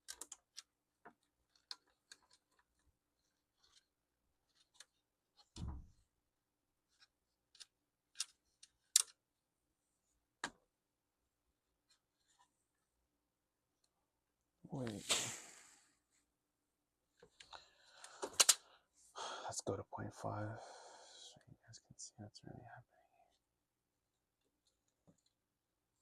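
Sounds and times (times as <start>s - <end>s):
laptop parts clicking: 0.0s - 2.8s, 6.9s - 9.2s, 17.2s - 18.6s
dull thump: 5.6s - 5.9s.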